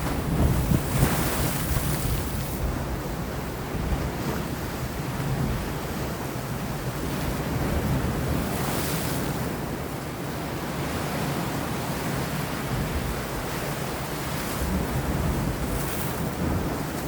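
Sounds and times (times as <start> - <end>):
sea waves breaking on rocks: 0.0 - 3.1
wind: 0.0 - 17.0.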